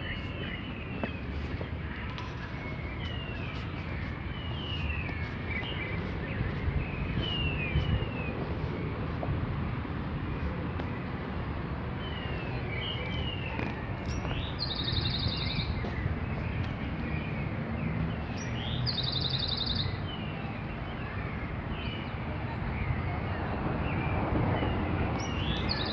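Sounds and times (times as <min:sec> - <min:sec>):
birds chirping: 0:00.0 - 0:09.3, 0:11.9 - 0:20.0, 0:24.6 - 0:25.9.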